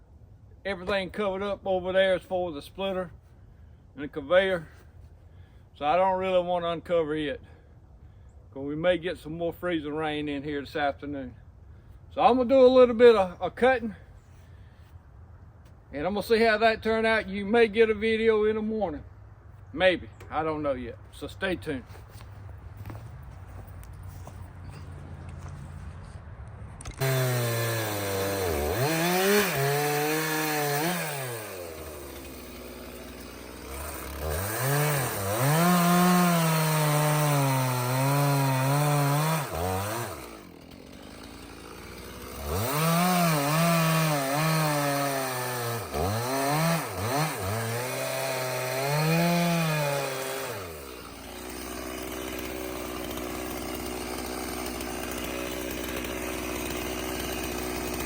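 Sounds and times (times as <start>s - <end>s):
chainsaw revving and cutting: 26.8s - 58.0s
chainsaw idling: 26.9s - 58.0s.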